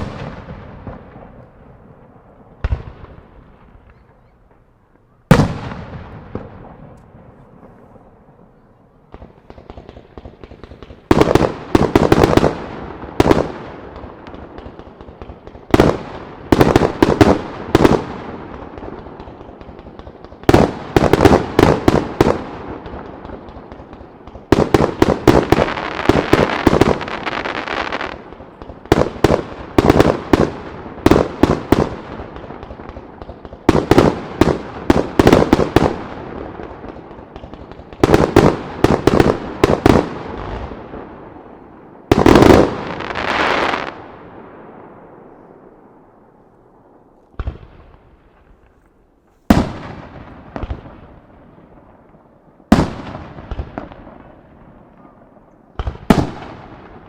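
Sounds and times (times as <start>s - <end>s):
firework crackling: 0.0s - 8.4s, 9.1s - 44.3s.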